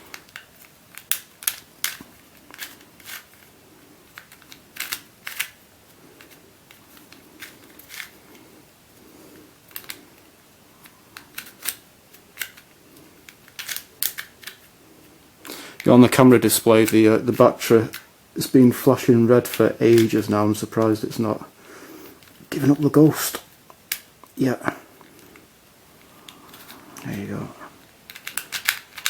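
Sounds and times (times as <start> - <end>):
plastic puzzle clicking: 0.1 - 5.6, 6.2 - 8.2, 9.7 - 10.0, 10.8 - 14.7, 17.7 - 18.1, 19.4 - 20.2, 27.8 - 29.0.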